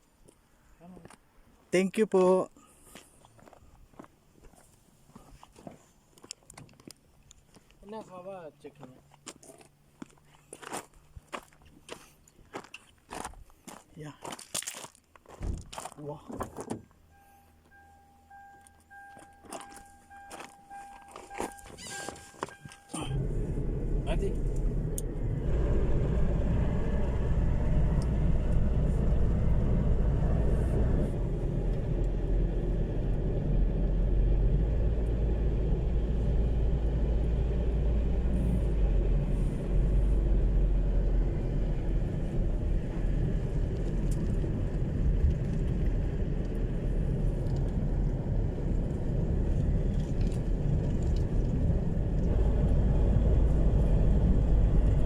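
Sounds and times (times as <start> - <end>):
road noise: 0.0 - 55.0
vehicle engine rumbling: 14.9 - 55.0.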